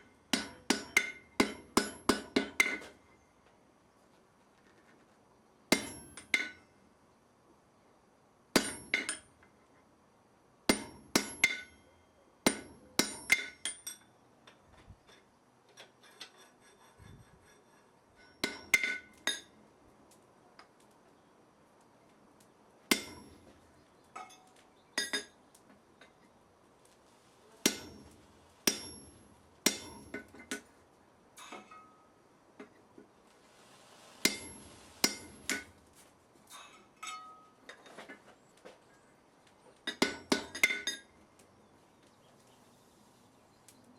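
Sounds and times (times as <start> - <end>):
hammer striking iron on anvil: 0.3 - 3.0, 5.7 - 6.6, 8.6 - 9.3, 10.7 - 11.8, 12.4 - 14.1, 18.2 - 19.5, 22.9 - 23.5, 27.6 - 30.6, 34.2 - 35.7, 39.9 - 41.0.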